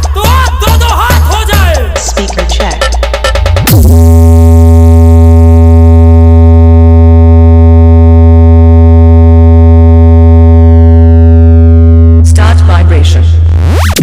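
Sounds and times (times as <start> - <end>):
deep synthesizer bass tone: 2.8 - 14.0.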